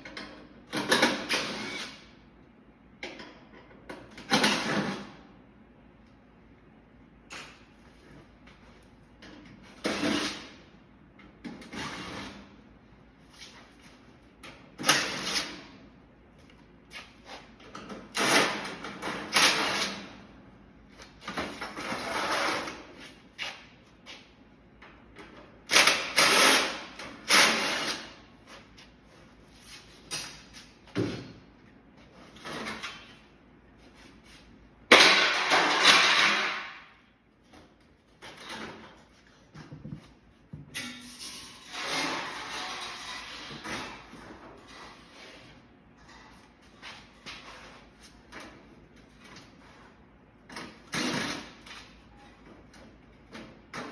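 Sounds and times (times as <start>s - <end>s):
scraping and rattling metal: 41.0s - 45.1s.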